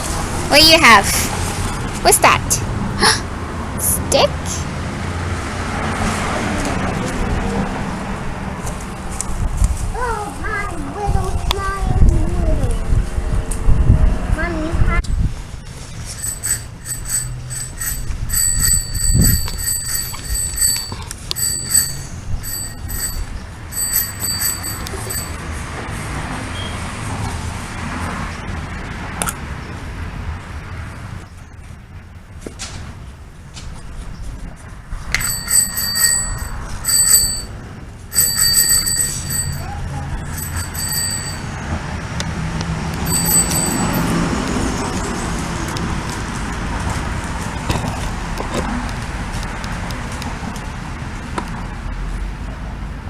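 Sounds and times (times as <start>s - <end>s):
small metal bell ringing: 16.1s - 25.5s, 35.2s - 41.7s, 43.0s - 44.4s.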